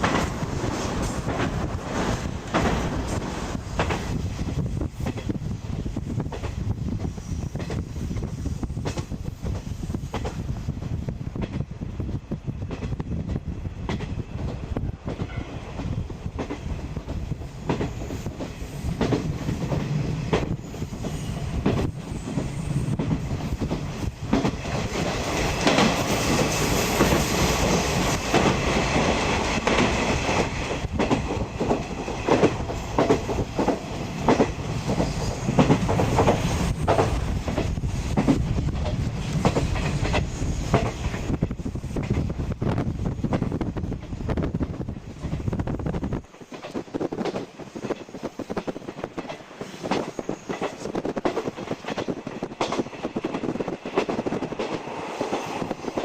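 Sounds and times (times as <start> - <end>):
wheels clacking over rail joints: 13.8 - 42.3, 46.3 - 56.0.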